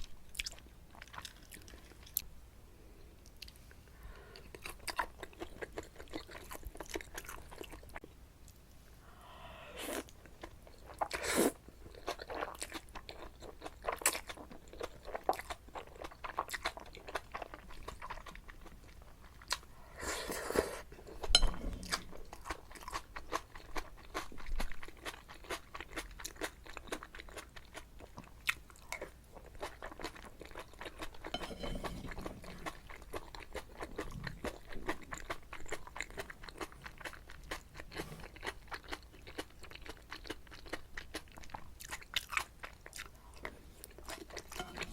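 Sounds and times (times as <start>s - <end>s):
chewing and biting noodles: 9.9s - 19.6s, 22.3s - 31.2s, 32.4s - 44.6s.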